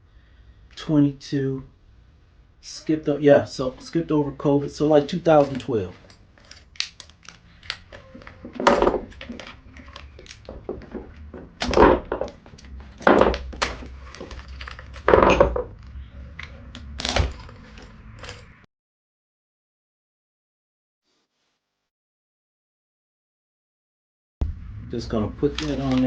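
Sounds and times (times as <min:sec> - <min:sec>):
loud thunks: 0:08.4 - 0:09.4, 0:10.5 - 0:12.4, 0:13.0 - 0:13.9.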